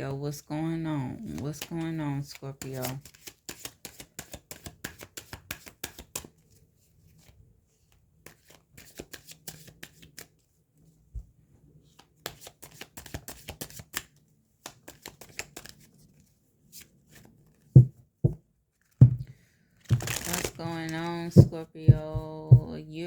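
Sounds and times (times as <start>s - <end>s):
cards being shuffled: 2.6s - 6.4s, 8.2s - 10.4s, 11.9s - 17.9s, 19.8s - 21.5s.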